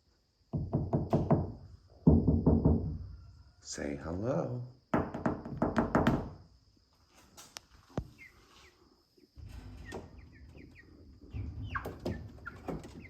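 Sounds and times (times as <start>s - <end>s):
chickens chirping: 7.9s - 13.0s.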